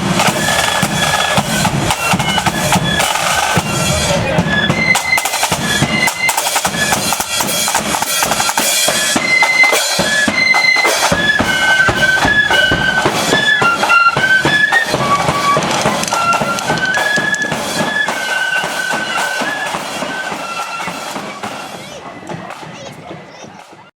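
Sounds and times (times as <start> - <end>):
bass drum: 0.0 - 8.6, 10.0 - 18.0
flutes playing melody: 0.0 - 23.9
snare drum: 0.0 - 23.9.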